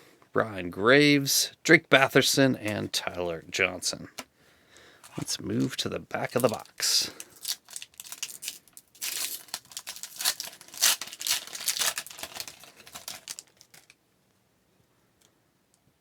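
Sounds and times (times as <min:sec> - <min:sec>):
wrapper crinkling and tearing: 0:05.0 - 0:14.0.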